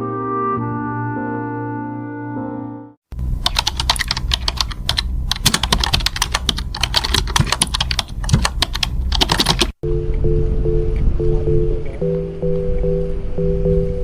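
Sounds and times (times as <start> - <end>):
rapid irregular clicking: 3.4 - 9.8
low rumble: 9.8 - 14.0.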